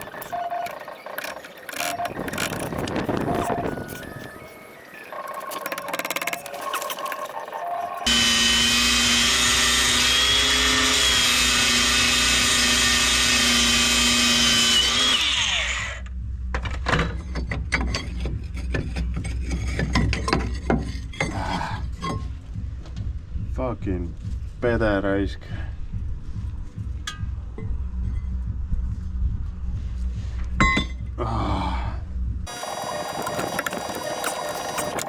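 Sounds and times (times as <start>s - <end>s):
power tool running: 8.0s - 16.0s, 32.5s - 35.0s
knocks and clatter: 16.5s - 21.4s.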